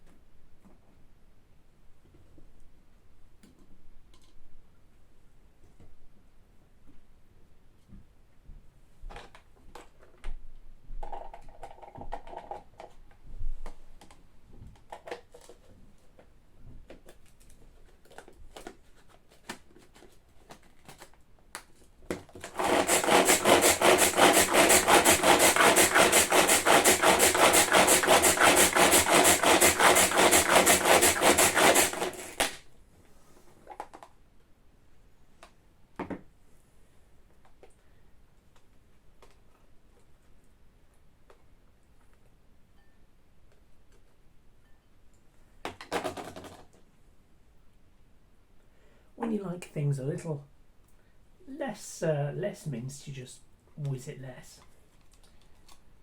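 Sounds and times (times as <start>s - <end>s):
electric chopper motor: 22.5s - 32.6s.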